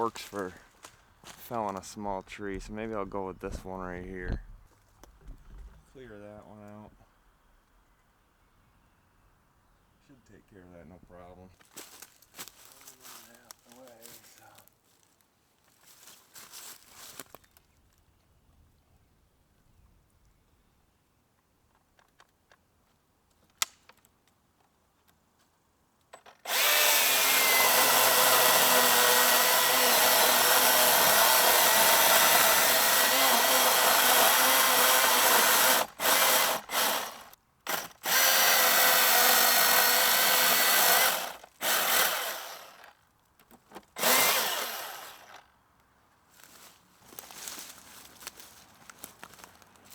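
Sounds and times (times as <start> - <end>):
chainsaw cutting wood: 0.0 - 5.8, 26.2 - 43.0, 43.8 - 45.5.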